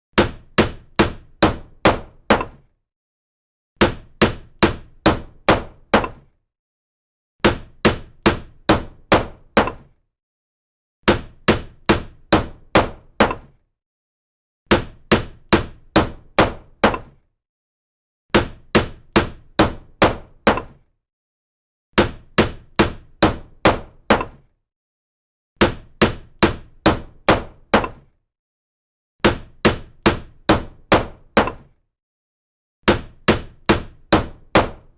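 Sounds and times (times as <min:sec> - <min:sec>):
hammer strikes: 0:00.2 - 0:02.6, 0:03.8 - 0:06.3, 0:14.7 - 0:17.2.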